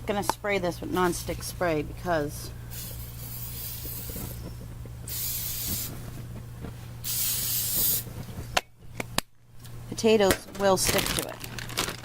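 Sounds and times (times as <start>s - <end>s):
aerosol spray hissing: 2.7s - 6.1s, 7.0s - 8.1s.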